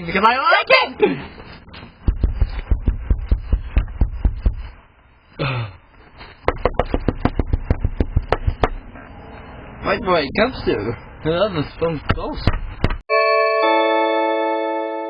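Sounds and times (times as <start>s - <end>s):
rapid knocking on a door: 2.0s - 4.7s, 6.4s - 8.8s.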